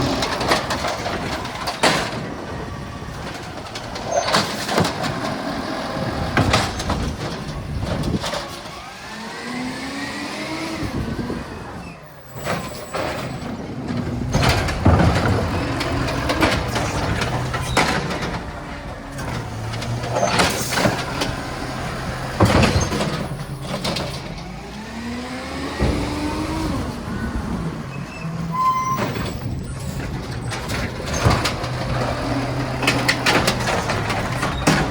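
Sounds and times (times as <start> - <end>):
diesel truck engine: 0.0 - 34.9.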